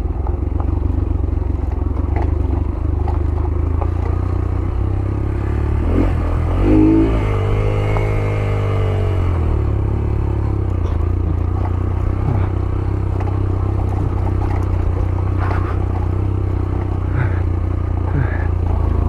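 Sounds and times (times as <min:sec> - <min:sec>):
bike rattling over rocks: 0:00.0 - 0:06.7, 0:09.5 - 0:17.8
motorcycle engine running: 0:00.0 - 0:19.0.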